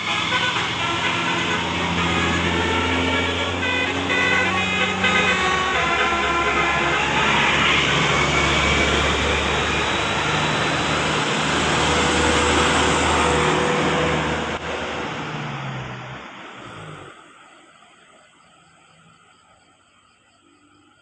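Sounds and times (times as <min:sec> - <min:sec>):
multi-tone bus horn: 0:00.0 - 0:15.0
bus passing close by: 0:00.0 - 0:17.6.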